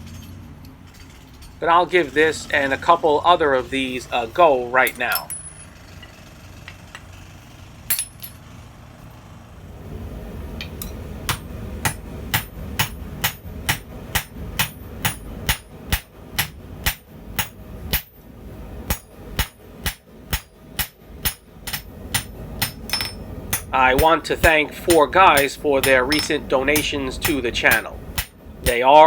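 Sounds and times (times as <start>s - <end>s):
low steady rumble: 6.6s - 29.0s
hammer ringing on steel: 18.9s - 28.9s.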